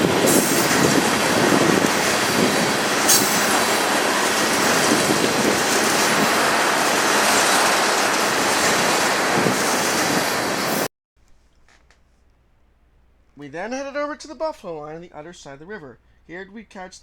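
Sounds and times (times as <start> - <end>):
train wheel squeal: 0.0 - 10.9
train wheels rushing on rails: 0.0 - 10.9.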